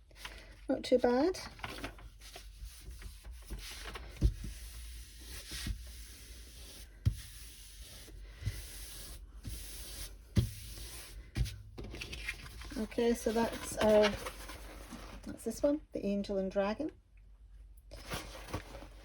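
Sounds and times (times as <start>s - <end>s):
plastic sheet rustling: 1.2s - 4.7s, 11.4s - 15.4s, 17.9s - 19.0s.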